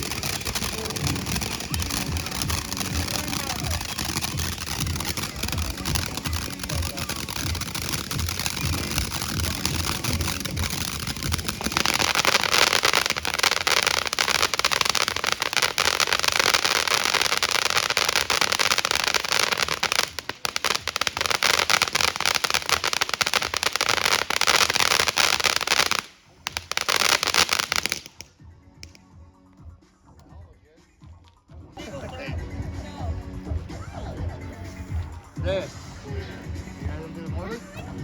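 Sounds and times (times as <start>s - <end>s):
fireworks crackling: 0.0s - 29.0s.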